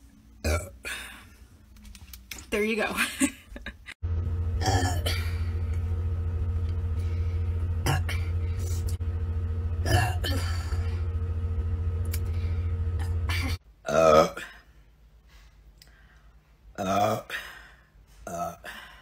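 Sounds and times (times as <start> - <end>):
steady low hum: 3.6 - 13.6.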